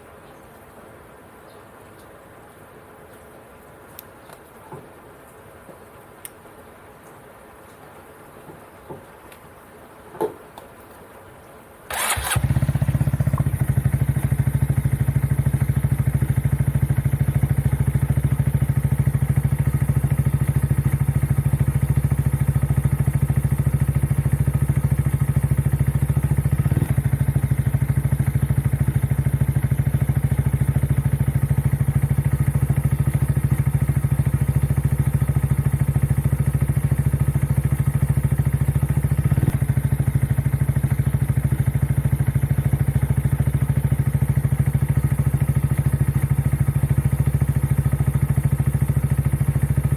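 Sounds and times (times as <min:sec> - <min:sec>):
click: 0:04.0 - 0:04.4
motorcycle engine idling: 0:11.9 - 0:49.9.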